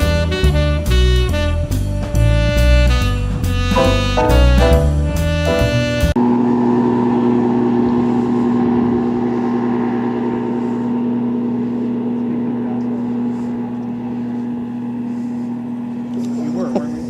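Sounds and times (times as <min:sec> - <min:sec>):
motorboat engine running: 0:03.4 - 0:17.0.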